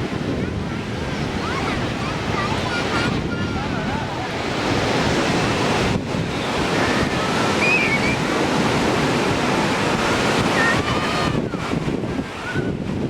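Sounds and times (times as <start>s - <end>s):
ocean surf breaking on beach: 0.0s - 13.0s
wind buffeting microphone: 0.0s - 13.0s.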